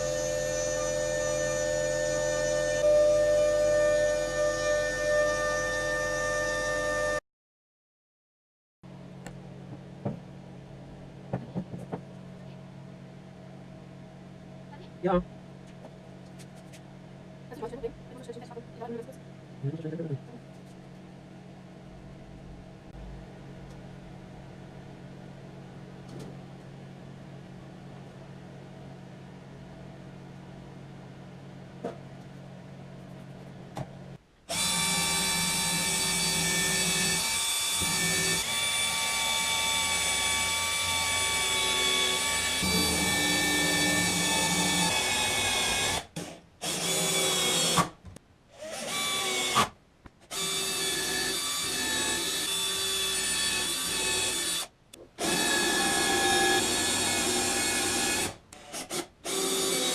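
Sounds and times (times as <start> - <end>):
power tool whining: 0.0 - 7.2, 34.5 - 47.9, 50.3 - 59.9
low steady hum: 8.9 - 34.5.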